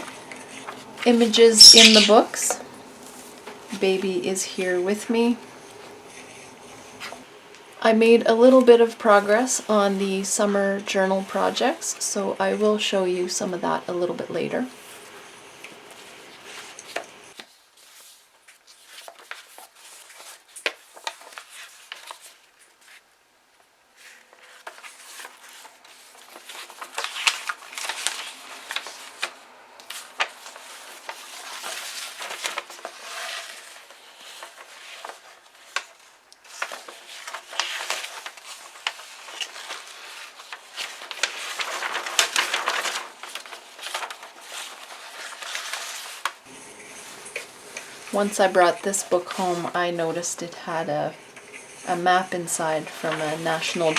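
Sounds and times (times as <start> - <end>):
book pages turning and rustling: 0.0 - 2.2, 3.0 - 3.6, 14.7 - 23.1, 24.0 - 50.5, 51.4 - 53.9.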